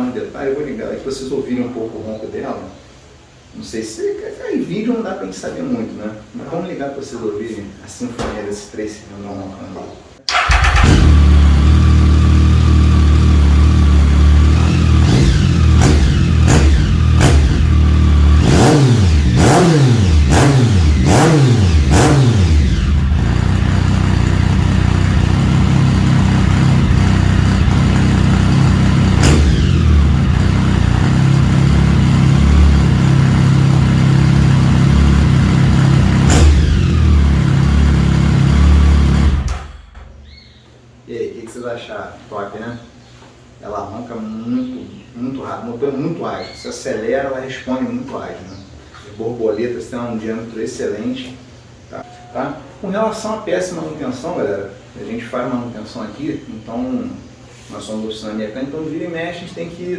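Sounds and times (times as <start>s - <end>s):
motorcycle engine idling: 10.3s - 39.7s.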